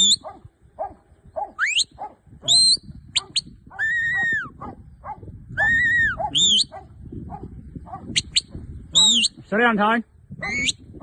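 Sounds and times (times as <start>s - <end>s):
shepherd's whistle: 0.0s - 0.2s, 1.6s - 4.5s, 5.6s - 6.7s, 8.2s - 9.4s, 10.4s - 10.8s.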